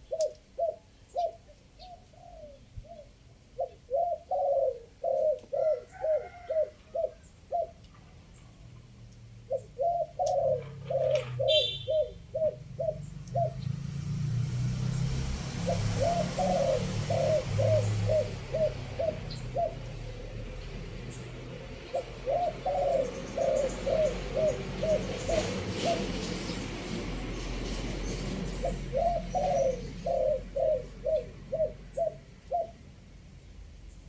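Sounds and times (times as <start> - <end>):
dove cooing: 0.0 - 7.9, 9.4 - 13.8, 15.5 - 20.6, 21.7 - 26.6, 28.3 - 32.9.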